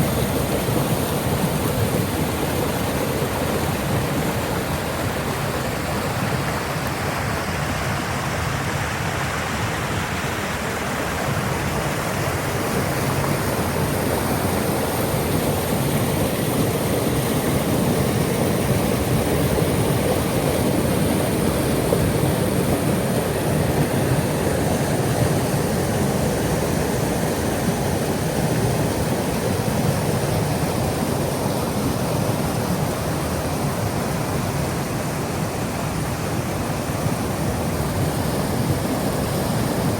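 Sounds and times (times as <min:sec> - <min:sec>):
waterfall: 0:00.0 - 0:39.9.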